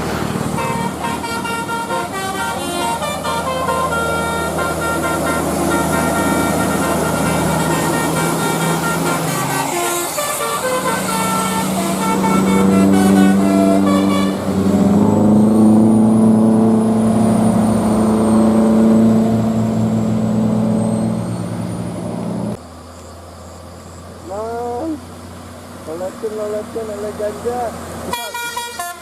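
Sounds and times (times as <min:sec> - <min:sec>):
multi-tone bus air horn tune: 0:00.1 - 0:14.9, 0:28.1 - 0:29.0.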